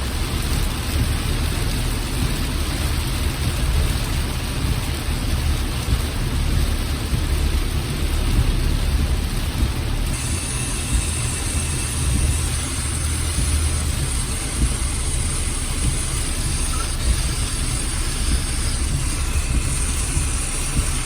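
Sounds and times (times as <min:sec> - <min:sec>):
rain and tyre hiss: 0:00.0 - 0:21.0
road and engine rumble: 0:00.0 - 0:21.0
thin high hiss: 0:10.1 - 0:21.0.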